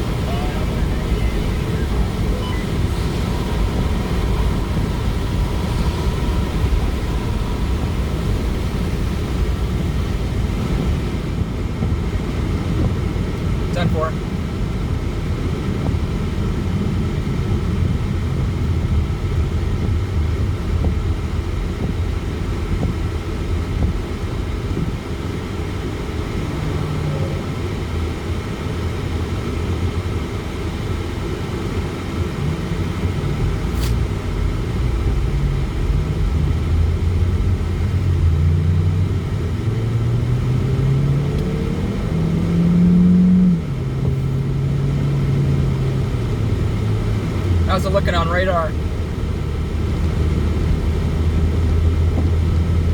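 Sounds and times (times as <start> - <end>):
car engine: 0.0 - 52.9
road rumble: 0.0 - 52.9.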